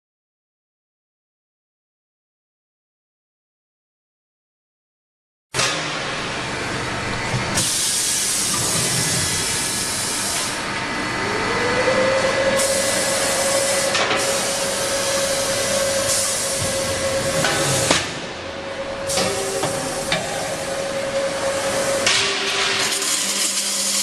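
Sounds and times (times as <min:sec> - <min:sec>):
motor whine: 0:08.4 - 0:23.7
machinery steady hiss: 0:12.6 - 0:18.0, 0:19.1 - 0:24.0.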